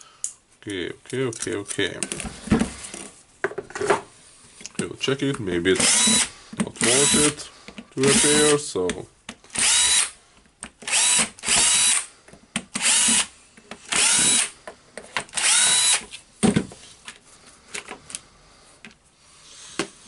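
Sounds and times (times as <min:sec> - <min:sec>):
cordless drill whining: 0:05.8 - 0:07.4, 0:09.5 - 0:10.2, 0:10.8 - 0:12.1, 0:12.8 - 0:13.3, 0:13.9 - 0:14.6, 0:15.3 - 0:16.1.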